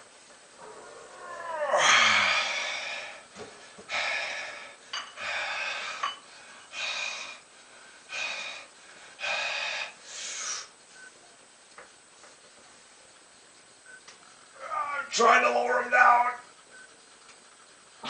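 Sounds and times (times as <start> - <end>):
man groaning: 1.2 - 2.6
man breathing hard: 1.8 - 10.8.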